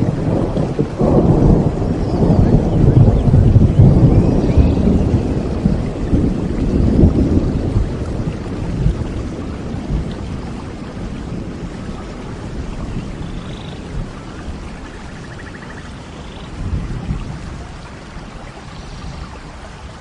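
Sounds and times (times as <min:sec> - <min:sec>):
thunder rolling: 0:00.0 - 0:15.8
steady rain: 0:00.0 - 0:20.0.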